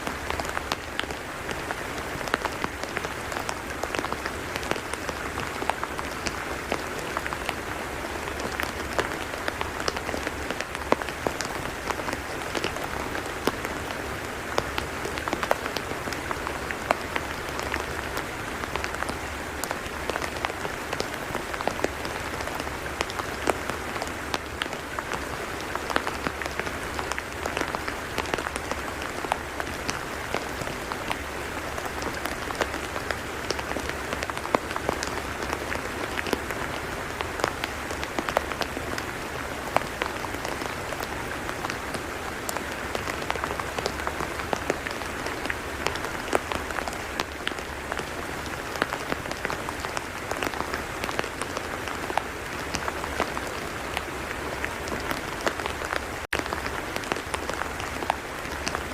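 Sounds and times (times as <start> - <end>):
rain patter and hiss: 0.0 - 58.9.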